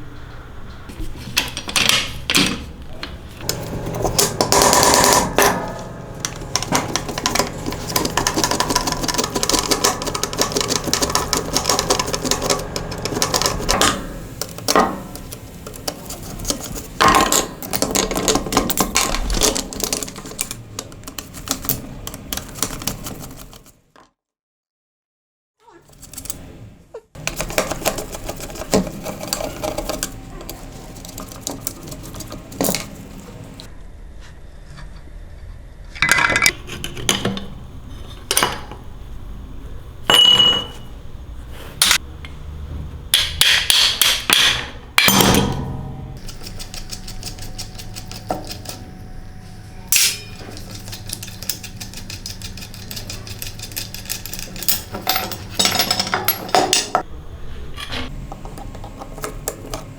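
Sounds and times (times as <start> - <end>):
low steady hum: 0.0 - 22.4, 44.8 - 59.8
metal parts and tools clinking: 49.9 - 57.0.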